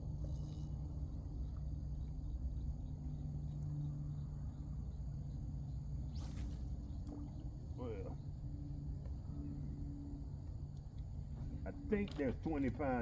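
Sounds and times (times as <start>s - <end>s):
crickets chirring: 1.2s - 13.0s
brief swish: 6.1s - 6.7s.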